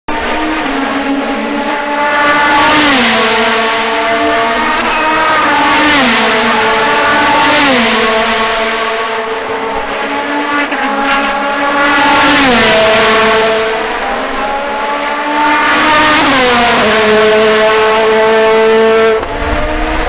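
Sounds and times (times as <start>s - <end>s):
race cars passing at speed: 0.1s - 20.0s.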